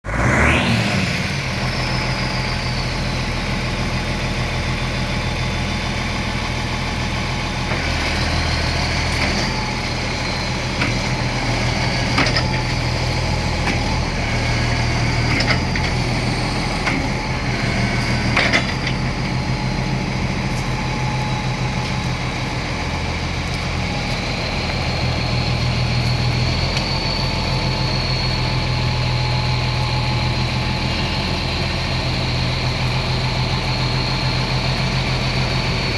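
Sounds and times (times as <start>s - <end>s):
bulldozer diesel engine running: 0.0s - 35.9s
wavering high whine: 5.8s - 35.9s.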